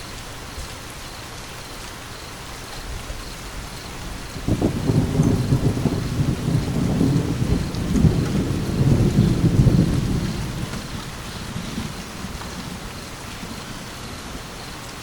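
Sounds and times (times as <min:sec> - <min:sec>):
steady rainfall: 0:00.0 - 0:15.0
thunder rumbling: 0:03.6 - 0:15.0.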